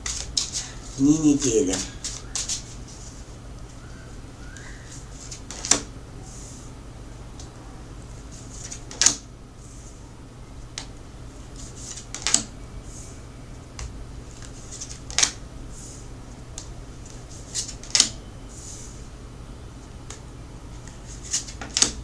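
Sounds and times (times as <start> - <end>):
cards rustling: 0.0 - 3.3
cards slapping on a table: 5.3 - 5.9, 14.8 - 15.4, 17.6 - 18.1, 21.3 - 22.0.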